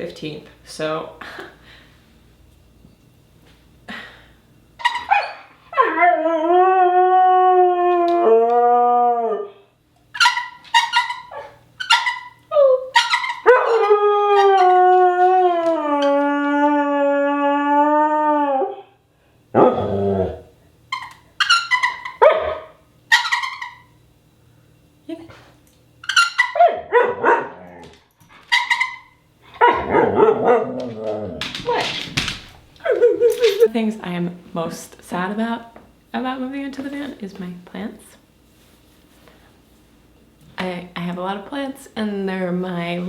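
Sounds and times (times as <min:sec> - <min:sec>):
dog yipping and barking: 0:04.8 - 0:06.0, 0:10.2 - 0:13.9, 0:21.4 - 0:23.8, 0:26.1 - 0:27.5
dog howling: 0:05.8 - 0:09.6, 0:12.5 - 0:19.0, 0:26.5 - 0:28.0, 0:29.6 - 0:31.9.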